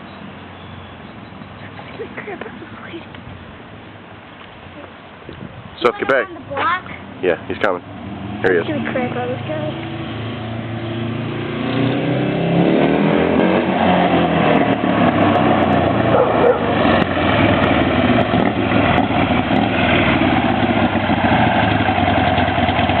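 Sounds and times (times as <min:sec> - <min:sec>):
motorcycle engine accelerating: 0:07.0 - 0:23.0.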